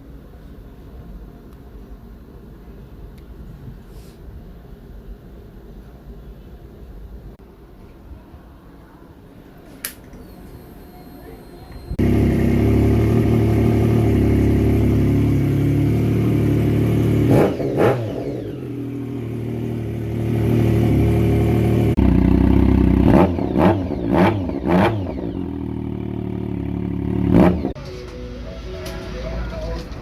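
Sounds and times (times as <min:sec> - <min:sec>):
motorcycle engine revving: 0:11.9 - 0:27.8
motorcycle engine idling: 0:12.0 - 0:27.8.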